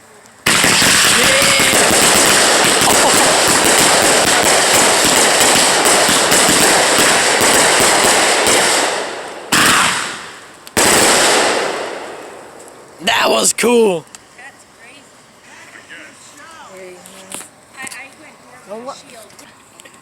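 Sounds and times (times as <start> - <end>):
firework crackling pops: 0.3 - 13.0
firework sharp burst: 0.4 - 13.4.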